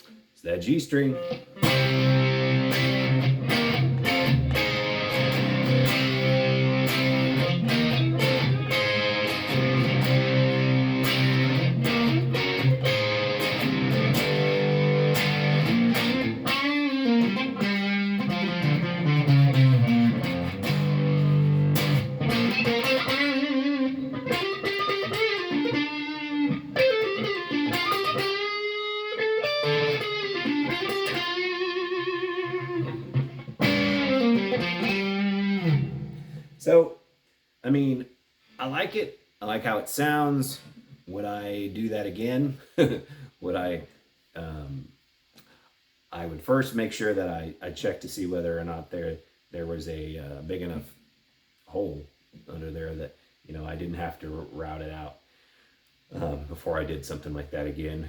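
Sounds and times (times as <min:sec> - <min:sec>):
electric guitar playing: 0:01.1 - 0:36.5.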